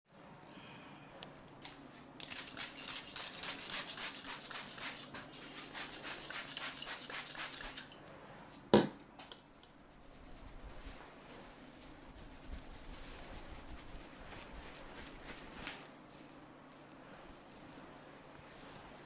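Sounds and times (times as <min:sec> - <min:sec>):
fingers scratching scalp and hair: 0:02.2 - 0:07.9, 0:12.0 - 0:14.9.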